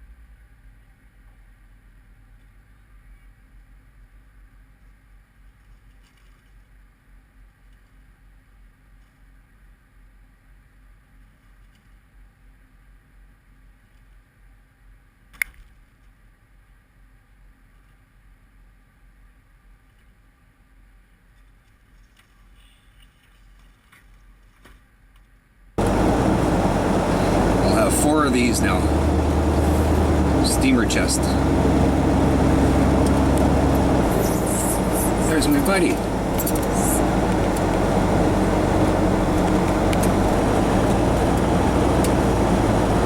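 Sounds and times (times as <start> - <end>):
loud steady vehicle noise: 25.8 - 43.0
road noise: 25.8 - 43.0
truck engine hum: 25.8 - 43.0.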